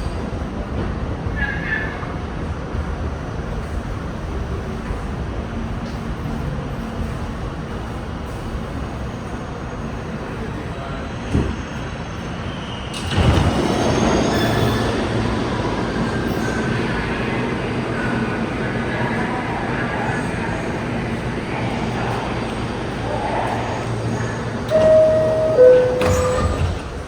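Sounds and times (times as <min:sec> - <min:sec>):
subway train rumbling on rails: 0:00.0 - 0:27.0
high wheel squeal: 0:12.5 - 0:17.5.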